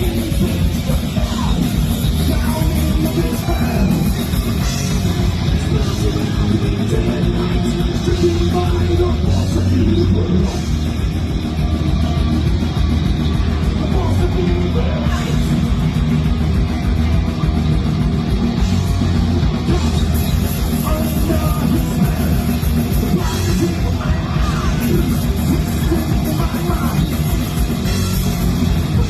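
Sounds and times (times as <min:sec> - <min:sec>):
thrash metal band playing: 0:00.0 - 0:29.0.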